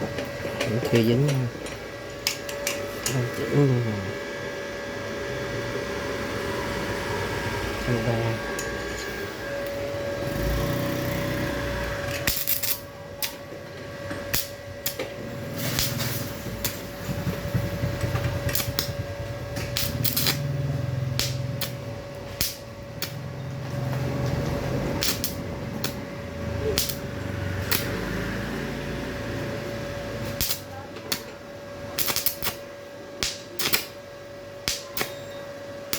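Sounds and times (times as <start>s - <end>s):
welder machine whine: 0.0s - 35.9s
low buzz of arc: 0.2s - 35.9s
welding arc crackling and popping: 9.6s - 13.5s, 14.1s - 29.3s, 30.1s - 34.0s, 34.6s - 35.2s.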